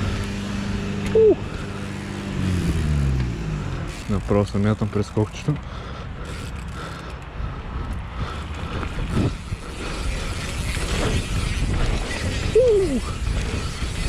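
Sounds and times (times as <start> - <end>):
bike tyres and frame rattling: 0.0 - 14.0
wind on microphone: 7.5 - 14.0.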